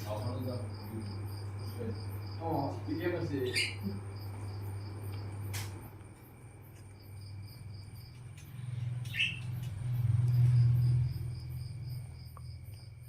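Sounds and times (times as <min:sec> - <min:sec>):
crickets trilling: 0:00.0 - 0:13.0
parrot chirping: 0:03.3 - 0:04.4, 0:08.9 - 0:10.0.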